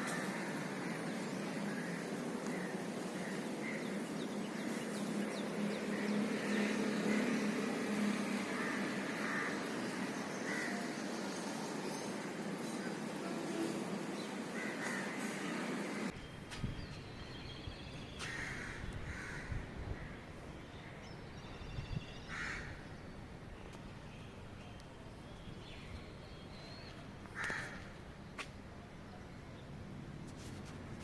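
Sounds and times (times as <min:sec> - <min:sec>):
steady rushing noise: 0:00.0 - 0:16.8
crows cawing: 0:08.5 - 0:09.8, 0:10.4 - 0:10.9, 0:14.5 - 0:15.4, 0:18.2 - 0:20.2, 0:22.3 - 0:22.8, 0:27.4 - 0:27.9.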